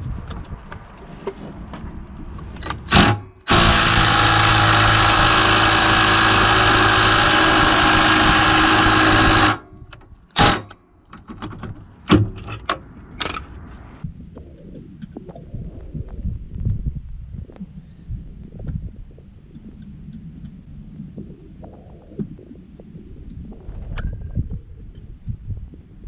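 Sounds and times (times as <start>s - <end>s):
impact wrench hammering: 2.9s - 9.6s, 10.4s - 10.8s
handling knocks and clicks: 9.9s - 13.7s.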